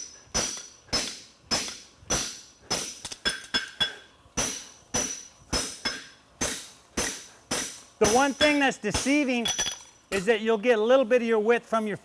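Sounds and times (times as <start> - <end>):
hammer striking horseshoe on anvil: 0.0 - 10.4.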